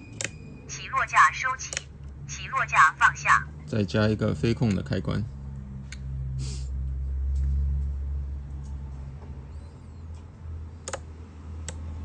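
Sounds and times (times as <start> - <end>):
sharp clicks: 1.6 - 1.9, 10.8 - 11.8.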